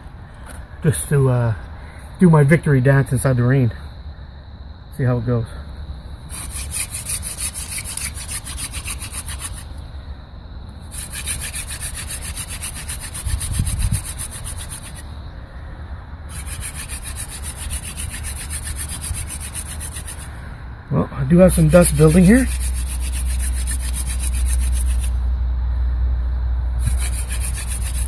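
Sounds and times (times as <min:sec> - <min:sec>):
wooden spindle rubbing: 0:06.3 - 0:09.7, 0:10.9 - 0:15.0, 0:16.3 - 0:20.3, 0:21.5 - 0:25.2, 0:26.8 - 0:28.0.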